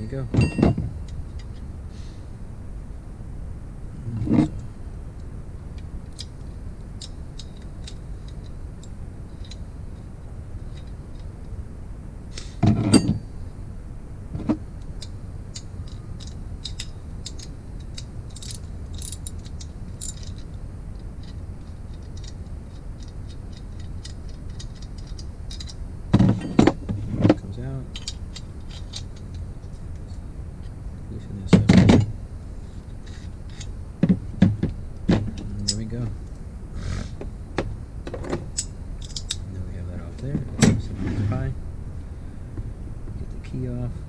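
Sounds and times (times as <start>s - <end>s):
steady low hum: 0.0s - 44.0s
loud clunk: 0.3s - 0.9s.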